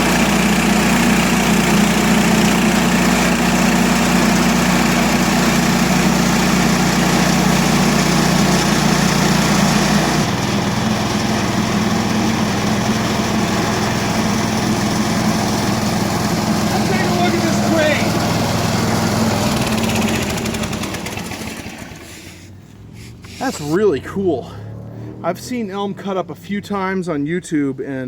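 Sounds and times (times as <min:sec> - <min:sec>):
sawmill engine running hard: 0:00.0 - 0:22.5
blade sawing through log: 0:16.7 - 0:18.2.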